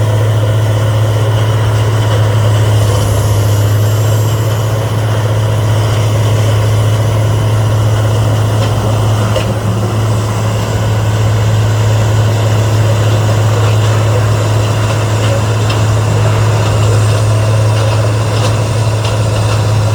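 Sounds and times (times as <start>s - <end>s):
diesel engine running: 0.0s - 19.9s.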